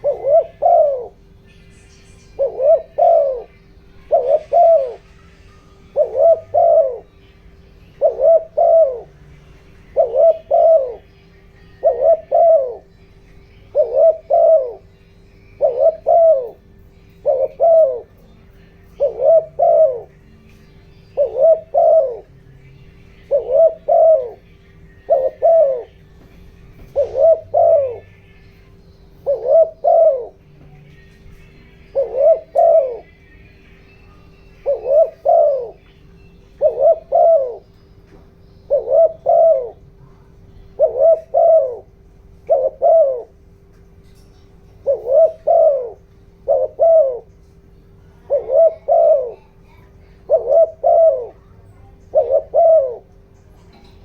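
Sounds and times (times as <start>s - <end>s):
dove cooing: 0.0s - 54.0s.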